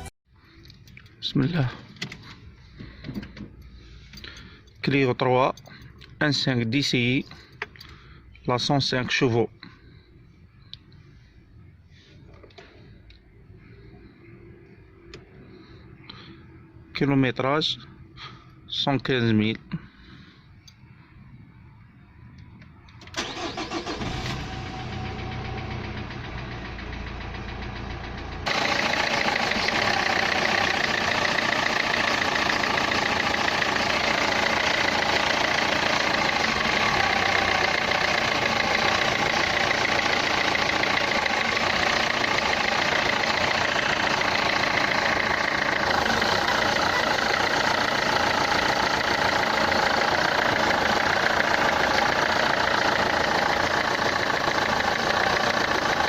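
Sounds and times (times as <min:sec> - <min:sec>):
diesel engine idling with clatter: 0:23.2 - 0:56.0.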